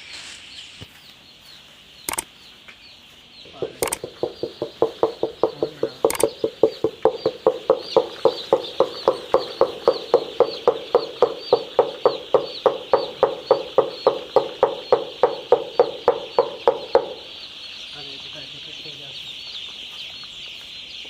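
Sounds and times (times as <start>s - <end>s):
chicks peeping: 0.0s - 21.0s
rhythmic knocking: 3.5s - 17.4s.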